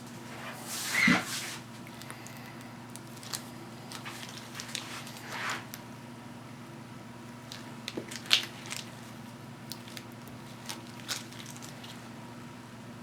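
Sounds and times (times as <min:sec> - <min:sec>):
steady low hum: 0:00.0 - 0:13.0
small clicks and crinkling: 0:01.8 - 0:05.9, 0:07.4 - 0:12.1.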